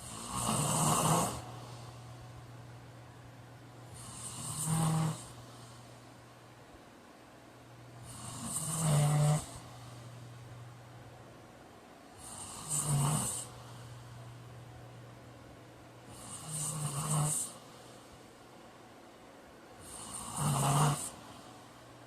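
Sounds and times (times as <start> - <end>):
man snoring: 0.0 - 1.5, 3.9 - 5.4, 8.0 - 9.6, 12.2 - 13.6, 16.1 - 17.6, 19.8 - 21.2.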